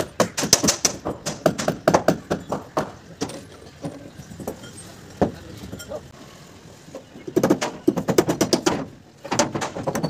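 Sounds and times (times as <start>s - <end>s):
hammering on timber and metal: 0.0s - 4.6s, 7.3s - 10.0s.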